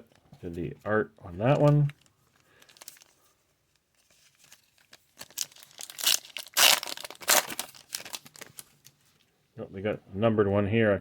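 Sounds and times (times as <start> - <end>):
foil wrapper tearing and crinkling: 1.5 - 3.2, 4.3 - 8.9.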